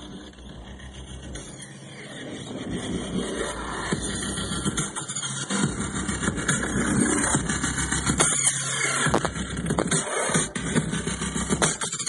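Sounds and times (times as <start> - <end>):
bass-heavy music: 0.0 - 12.0.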